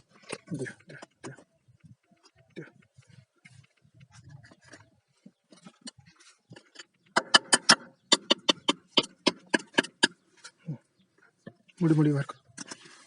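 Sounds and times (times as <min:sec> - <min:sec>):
light handling noises: 0:00.0 - 0:07.2.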